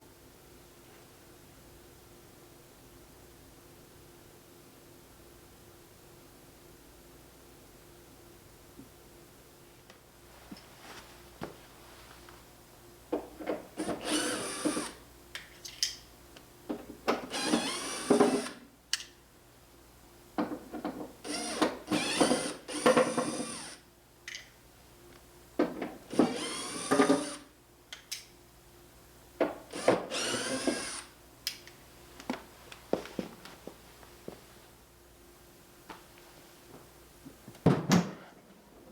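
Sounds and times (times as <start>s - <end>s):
electric drill whirring: 13.8s - 15.0s, 17.3s - 18.6s, 21.2s - 23.8s, 26.1s - 27.5s, 29.7s - 31.1s.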